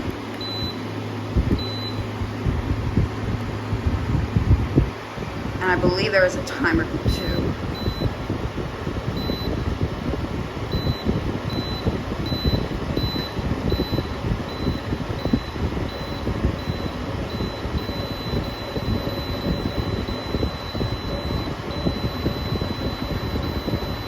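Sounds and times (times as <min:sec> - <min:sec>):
air conditioner fan blowing: 0:00.0 - 0:24.0
faint high whine: 0:10.7 - 0:24.0.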